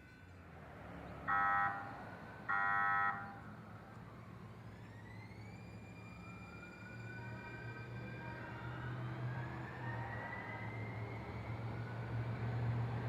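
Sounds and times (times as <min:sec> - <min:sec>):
trolley horn blasts: 0:01.3 - 0:01.9, 0:02.5 - 0:03.4.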